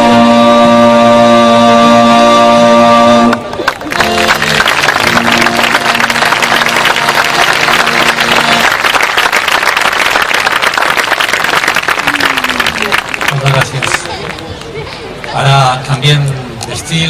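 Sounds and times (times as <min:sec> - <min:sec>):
audience applauding: 0:03.3 - 0:14.7.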